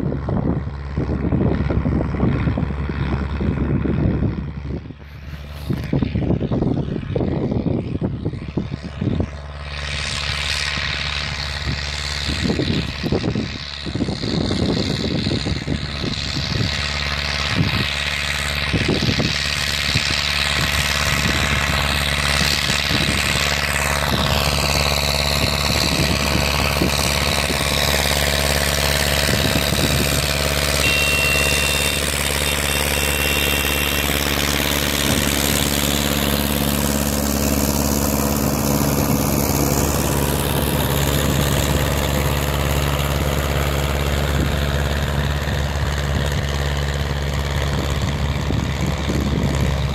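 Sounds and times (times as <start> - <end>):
tractor diesel engine running: 0.0 - 49.9.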